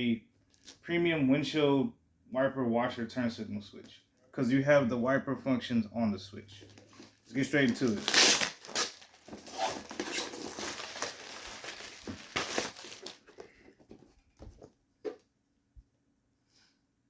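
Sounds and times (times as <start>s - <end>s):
packaging crinkling and rustling: 0.5s - 0.8s, 6.6s - 15.2s.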